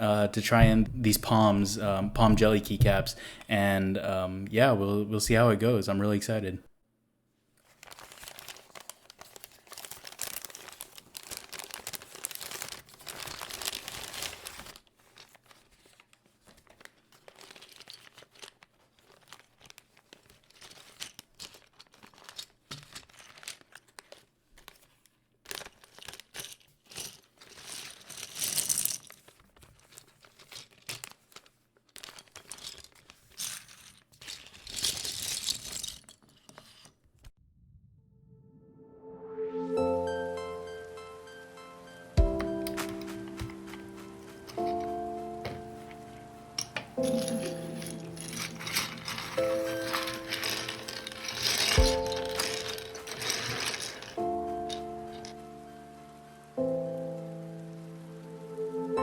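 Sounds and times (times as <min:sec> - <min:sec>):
plastic packaging crinkling: 0:07.6 - 0:37.0, 0:42.1 - 0:58.1.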